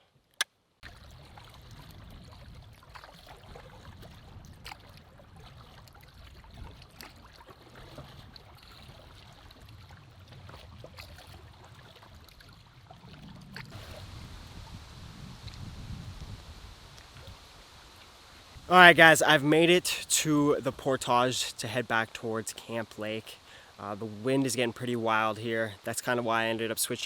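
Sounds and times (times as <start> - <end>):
water lapping around canoe: 0.8 - 15.7
wind rumble on microphone: 0.8 - 18.7.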